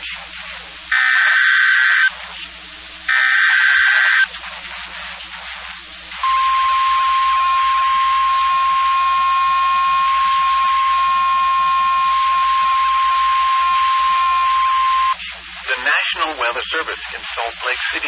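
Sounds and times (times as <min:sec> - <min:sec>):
faint radio hiss: 0:00.0 - 0:18.0
steady high alarm tone: 0:00.9 - 0:02.2, 0:03.1 - 0:04.3, 0:06.2 - 0:15.2.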